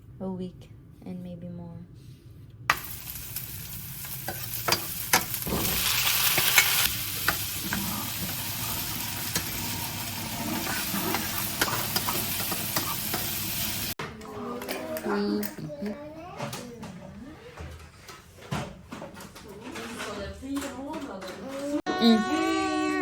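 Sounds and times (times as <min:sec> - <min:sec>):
food sizzling in a pan: 0:02.7 - 0:14.0.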